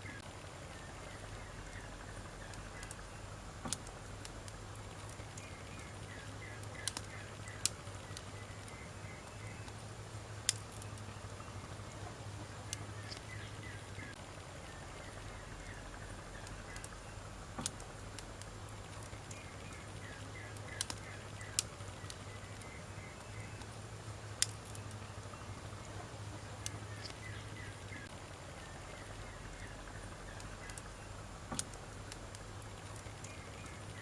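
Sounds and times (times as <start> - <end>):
low steady hum: 0.0 - 34.0
wood fire crackling and popping: 0.0 - 34.0.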